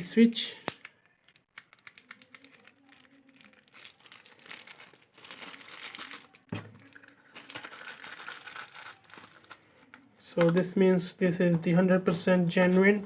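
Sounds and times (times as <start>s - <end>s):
plastic packaging crinkling: 0.5s - 10.5s.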